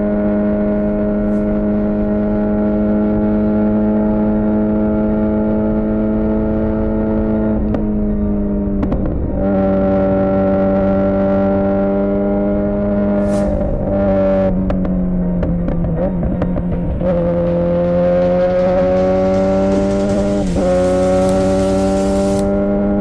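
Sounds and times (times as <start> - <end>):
motorcycle engine at steady revs: 0.2 - 7.9, 14.3 - 23.0.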